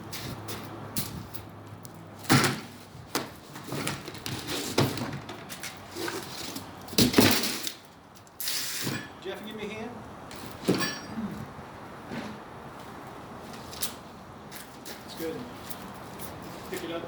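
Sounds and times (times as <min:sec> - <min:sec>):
cardboard scraping rustle: 0:02.6 - 0:06.7.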